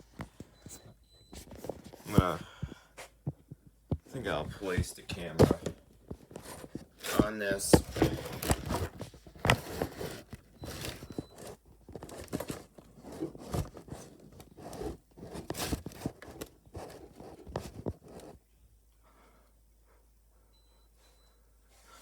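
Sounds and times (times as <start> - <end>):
camera handling knocks and scrapes: 3.9 - 18.4.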